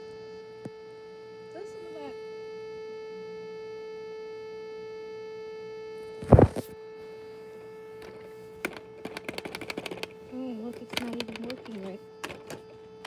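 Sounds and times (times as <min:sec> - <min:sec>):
toy buzzing steady tone: 0:07.2 - 0:13.0
sharp clicks: 0:08.0 - 0:13.0.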